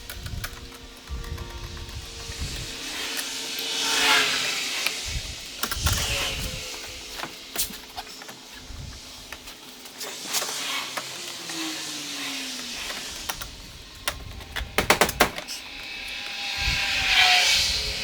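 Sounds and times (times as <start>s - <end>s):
trim panels clicking and knocking: 14.1s - 15.6s.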